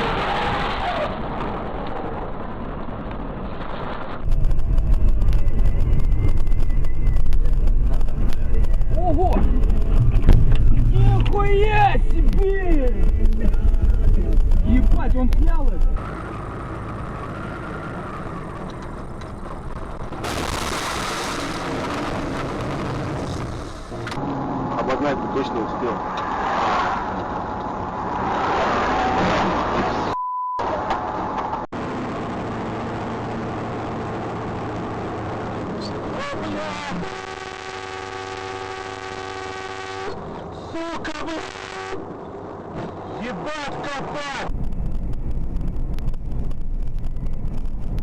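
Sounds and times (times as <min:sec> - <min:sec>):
vehicle engine and road noise: 0:00.0 - 0:48.0
vehicle horn blast: 0:37.0 - 0:40.2, 0:41.1 - 0:42.0.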